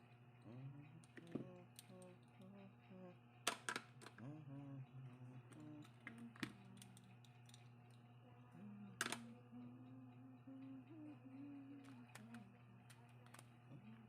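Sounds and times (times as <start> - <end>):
steady low hum: 0.0 - 14.0
faint clicks and taps: 1.0 - 2.5, 11.8 - 13.6.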